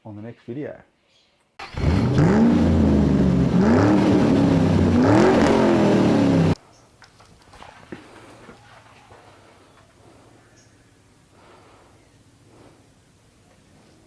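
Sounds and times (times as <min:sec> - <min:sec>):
motor vehicle engine revving: 0:01.6 - 0:06.6.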